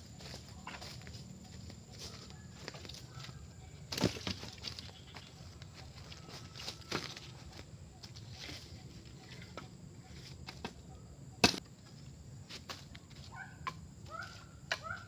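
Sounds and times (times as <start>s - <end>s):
bird calling: 0.0s - 11.6s, 13.3s - 15.0s
sharp chopping knocks: 11.4s - 11.6s.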